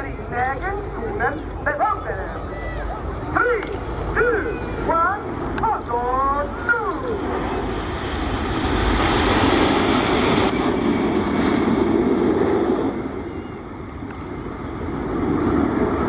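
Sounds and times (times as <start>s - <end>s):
aeroplane engine rush: 0.0s - 16.0s.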